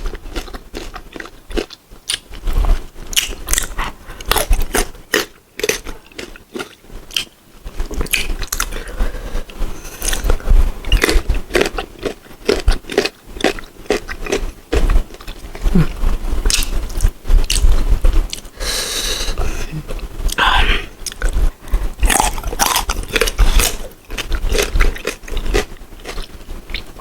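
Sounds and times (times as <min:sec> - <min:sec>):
wet mouth sounds: 0:09.4 - 0:27.0.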